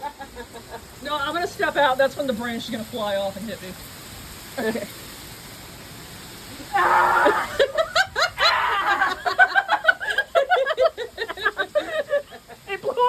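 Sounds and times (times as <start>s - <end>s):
steady rain hiss: 0.0s - 13.0s
person shrieking: 6.6s - 7.8s, 8.4s - 9.2s
person laughing: 7.2s - 12.7s.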